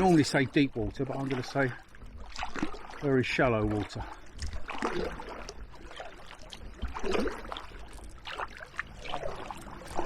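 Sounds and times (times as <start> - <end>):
kayak paddle splashing: 0.0 - 10.0.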